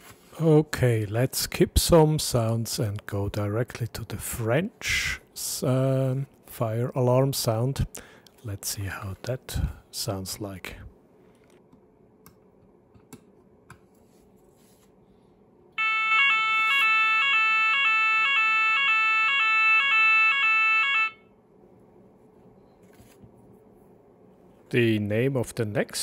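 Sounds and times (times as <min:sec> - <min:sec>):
two-tone fire alarm: 0:15.8 - 0:21.4.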